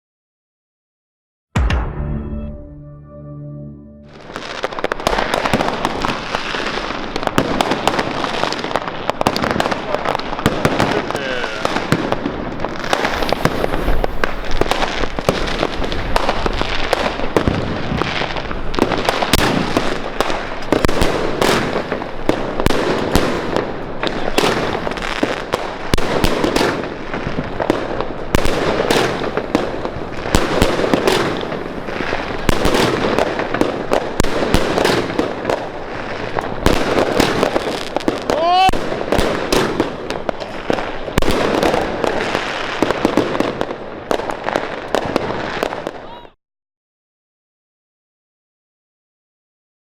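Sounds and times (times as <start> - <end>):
firework cake sharp bangs: 4.6 - 46.0.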